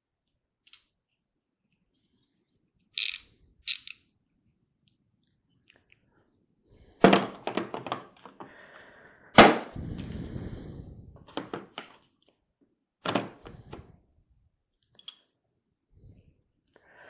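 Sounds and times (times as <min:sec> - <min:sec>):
fast fine clicking of tools: 0:03.0 - 0:04.0.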